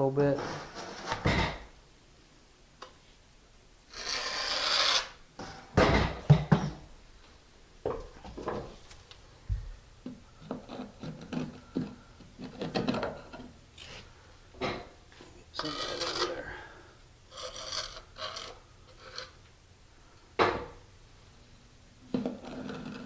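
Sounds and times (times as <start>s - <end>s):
metal blade scraping mortar: 3.9s - 5.2s, 15.6s - 16.4s, 17.3s - 19.4s, 22.4s - 23.0s.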